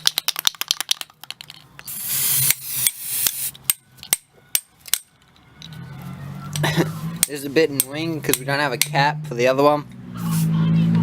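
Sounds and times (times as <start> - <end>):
spray can ball rattling: 0.0 - 3.7
spray paint hissing: 1.9 - 3.6, 10.2 - 10.6.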